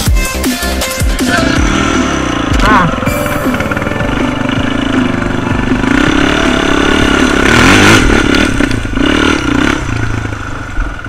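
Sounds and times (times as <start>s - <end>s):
quad bike engine revving: 1.2s - 3.0s, 4.4s - 11.0s.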